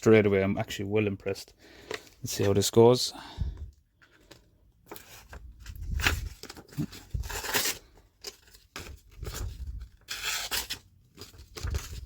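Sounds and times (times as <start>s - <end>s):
paper rustling: 4.0s - 12.0s.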